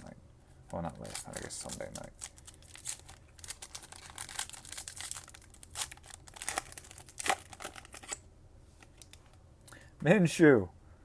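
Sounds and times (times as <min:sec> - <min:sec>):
wrapper crinkling and tearing: 0:00.7 - 0:08.2.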